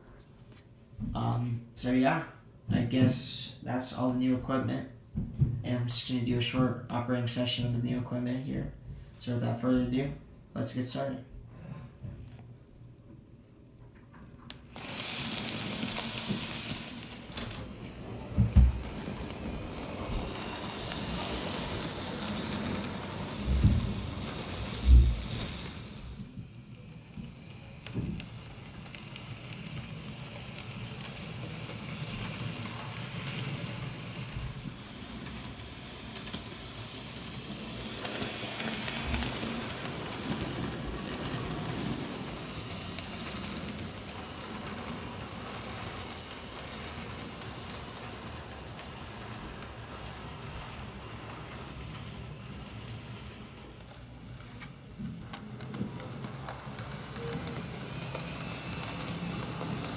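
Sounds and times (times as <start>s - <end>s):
model train running: 14.5s - 59.9s
small clicks: 35.2s - 59.9s.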